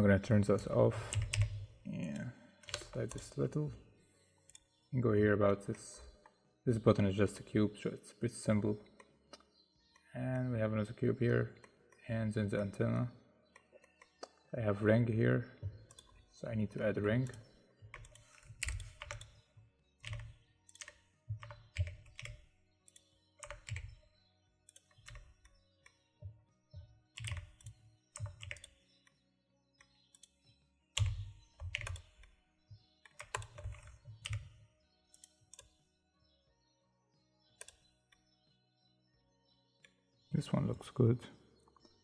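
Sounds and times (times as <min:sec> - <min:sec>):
faint background music: 0:00.0 - 0:42.0
computer keyboard typing: 0:01.0 - 0:03.4, 0:15.6 - 0:24.1, 0:24.7 - 0:25.6, 0:27.2 - 0:28.8, 0:31.0 - 0:32.4, 0:33.1 - 0:34.6, 0:37.6 - 0:37.9.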